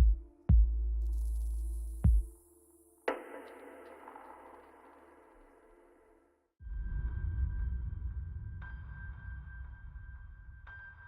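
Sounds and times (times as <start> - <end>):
electronic music with deep bass: 0.0 - 5.7.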